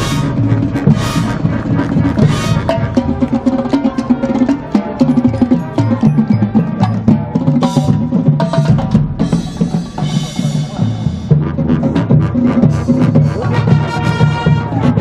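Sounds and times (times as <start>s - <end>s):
cymbals crashing: 0.0s - 3.3s
marching band playing: 0.0s - 15.0s.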